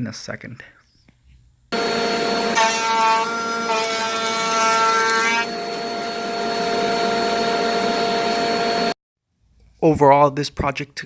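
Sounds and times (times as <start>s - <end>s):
dust collector humming: 1.8s - 8.9s
router whine: 1.8s - 9.0s.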